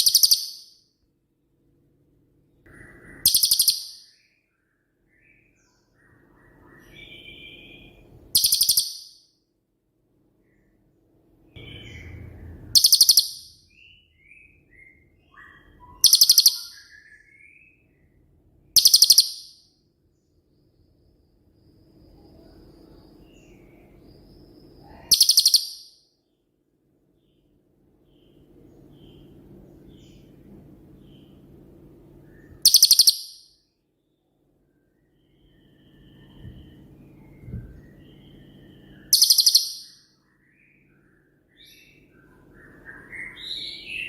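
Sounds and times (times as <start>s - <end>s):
soft whistled bird notes: 0.0s - 0.8s, 2.6s - 9.2s, 11.5s - 18.2s, 18.8s - 19.6s, 20.3s - 26.0s, 27.2s - 44.0s
quiet bird chatter: 0.0s - 44.0s
bird rattling trills: 32.6s - 33.4s.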